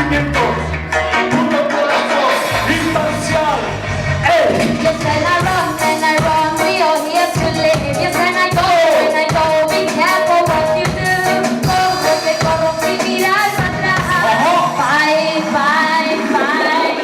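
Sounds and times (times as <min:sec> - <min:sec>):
reggae drums and bass: 0:00.0 - 0:15.8
woman singing: 0:04.8 - 0:17.0.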